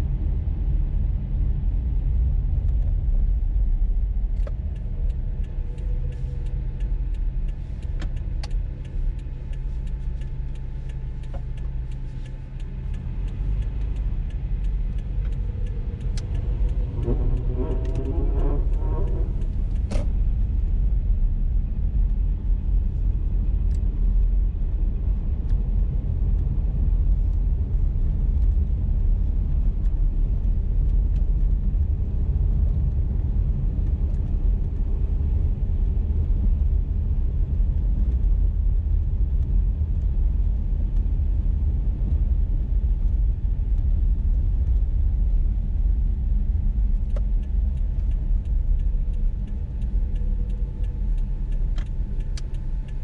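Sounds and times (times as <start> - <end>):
car driving on snowy road: 0.0 - 53.0
faint ticks: 4.3 - 20.6, 43.1 - 53.0.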